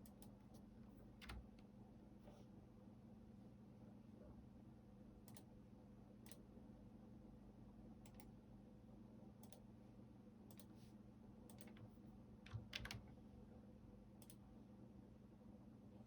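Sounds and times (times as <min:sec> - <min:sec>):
faint steady hum: 0:00.0 - 0:16.0
keyboard keystrokes: 0:01.2 - 0:01.6, 0:12.5 - 0:13.1.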